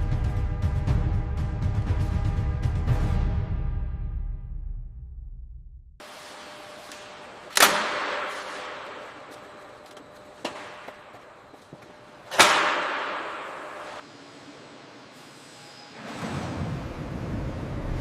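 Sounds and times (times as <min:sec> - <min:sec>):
loud echoing bangs: 0:06.0 - 0:14.1.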